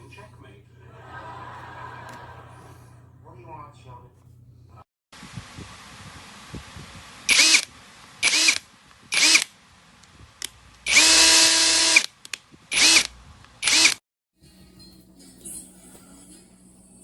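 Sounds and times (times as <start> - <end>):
impact wrench whining bursts: 7.3 - 9.5, 10.8 - 14.0.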